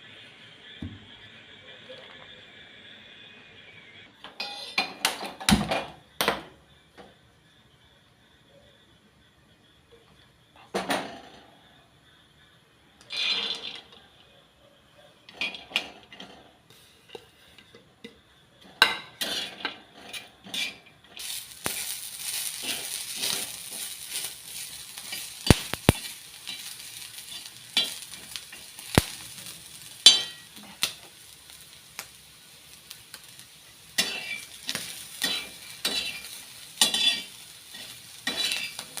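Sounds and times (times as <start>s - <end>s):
corn sizzling in a pan: 0.0s - 14.3s, 15.1s - 39.0s
spoon scraping a pan: 4.4s - 5.2s, 15.3s - 32.1s, 33.2s - 39.0s.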